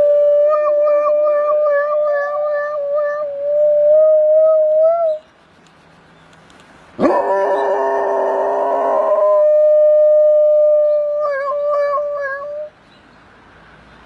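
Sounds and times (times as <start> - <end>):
dogs howling: 7.0 - 12.7.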